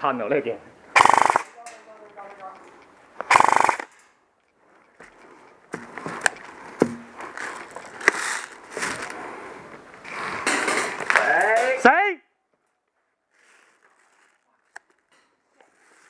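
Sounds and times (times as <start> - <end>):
loud burst: 1.0 - 1.5, 3.3 - 3.9.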